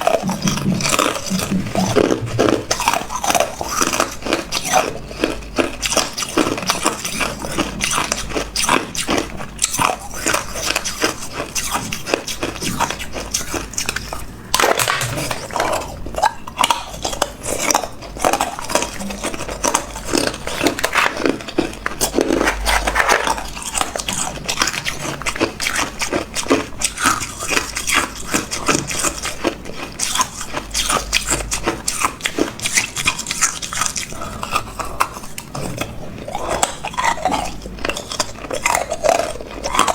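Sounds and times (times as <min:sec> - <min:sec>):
crunching ice: 0:00.1 - 0:28.1.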